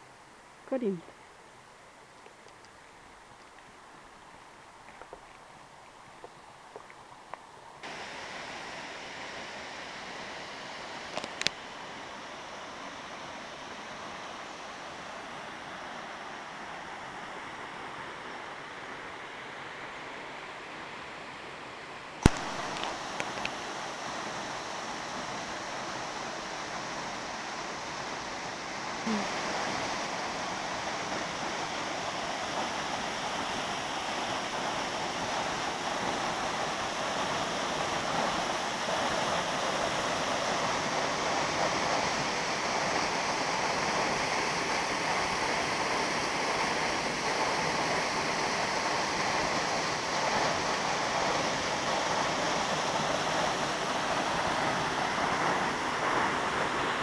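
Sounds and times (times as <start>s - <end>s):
waterfall pouring and splashing: 7.8s - 18.8s, 22.2s - 57.0s
sharp click: 22.2s - 23.6s.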